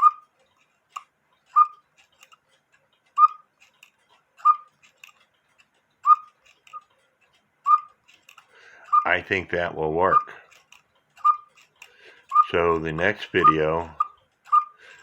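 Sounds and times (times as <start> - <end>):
clock ticking: 0.0 - 15.0
faint small clicks: 0.1 - 9.0.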